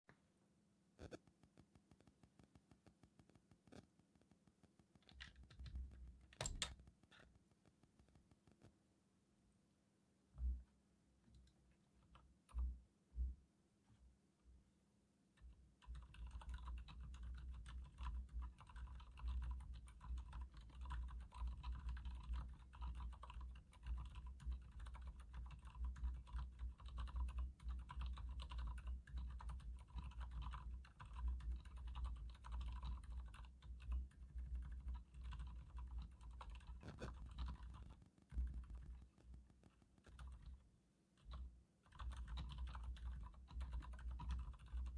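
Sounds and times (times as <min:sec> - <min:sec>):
mechanical keyboard typing: 0:05.0 - 0:07.2, 0:15.4 - 0:40.6, 0:41.2 - 0:44.9.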